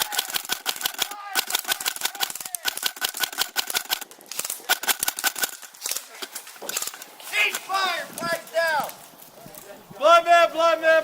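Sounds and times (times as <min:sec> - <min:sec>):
rapid airsoft gunfire: 0:00.0 - 0:05.6.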